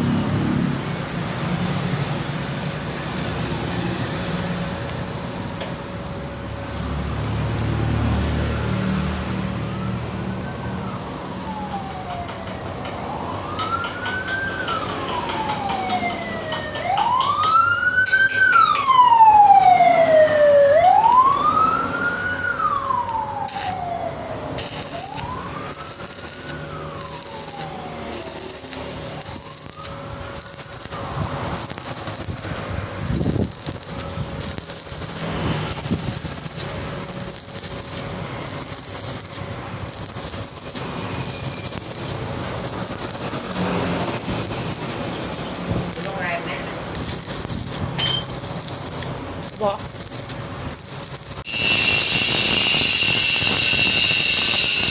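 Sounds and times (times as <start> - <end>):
emergency siren wailing: 7.7 - 50.0, 50.7 - 54.9
crackling: 22.8 - 54.9.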